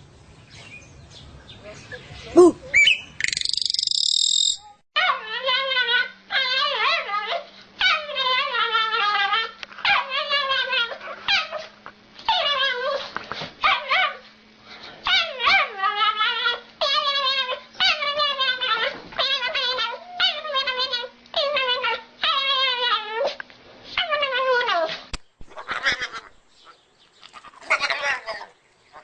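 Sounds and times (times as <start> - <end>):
dog making drawn-out vocal calls: 2.3 - 2.7.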